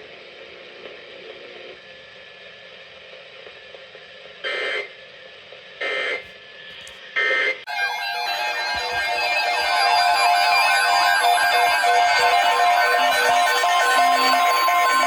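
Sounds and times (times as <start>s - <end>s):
harsh digital data screeches: 7.7s - 15.0s.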